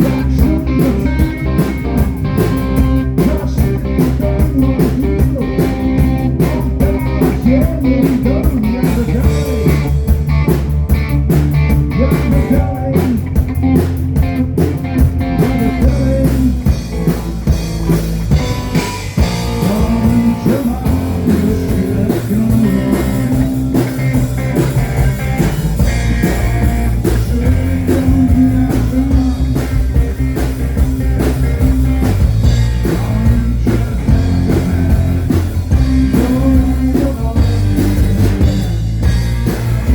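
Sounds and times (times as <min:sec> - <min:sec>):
bass guitar: 0:00.0 - 0:39.9
drum beat: 0:00.0 - 0:39.9
guitar bending notes: 0:12.8 - 0:39.9.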